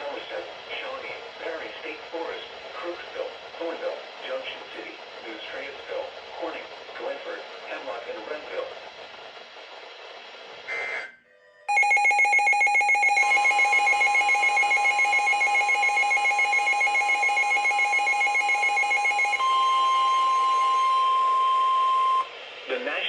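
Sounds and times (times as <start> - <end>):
pulsing two-tone electronic alarm: 11.7 - 22.3
steady alarm tone: 11.7 - 22.4.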